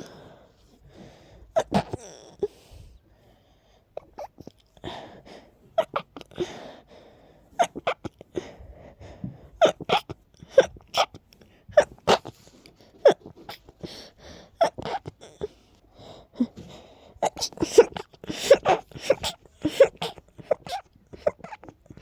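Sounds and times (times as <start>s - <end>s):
person sneezing: 16.6s - 21.7s.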